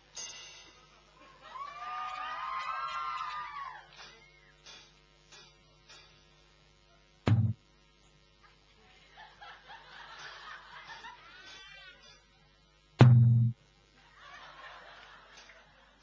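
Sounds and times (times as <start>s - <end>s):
deep drum hits: 7.3s - 7.6s, 13.0s - 13.6s
audience laughing and murmuring: 8.8s - 12.5s.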